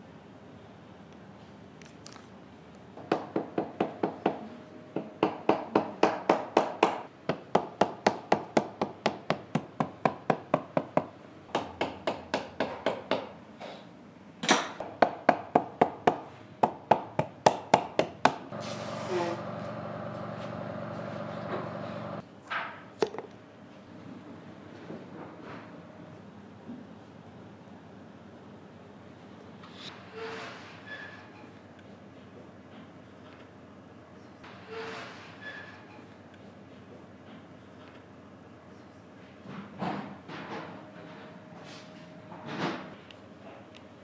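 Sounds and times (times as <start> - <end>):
machine hum: 18.5 - 22.2.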